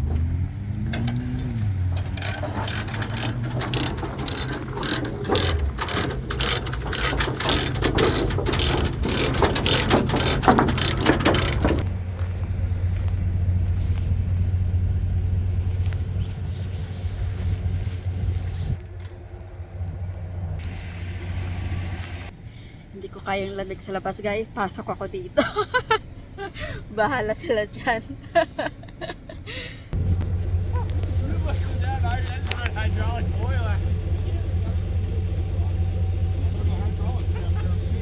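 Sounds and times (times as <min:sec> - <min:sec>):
metallic clicking and clanking: 0:00.0 - 0:12.4
engine idling: 0:00.0 - 0:23.8, 0:25.3 - 0:38.0.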